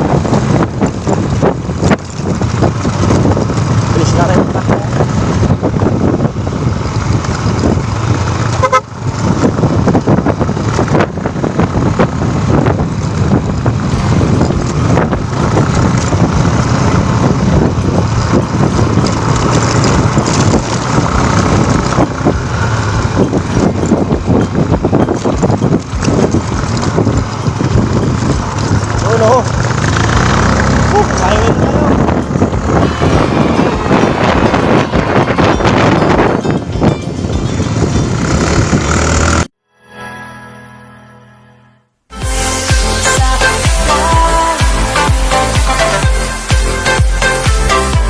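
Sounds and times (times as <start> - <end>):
motor vehicle running: 0.0 - 39.6, 42.1 - 48.0.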